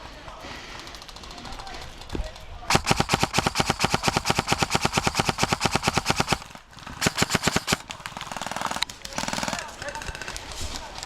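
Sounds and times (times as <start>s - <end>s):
airsoft gun automatic fire: 2.7s - 10.4s.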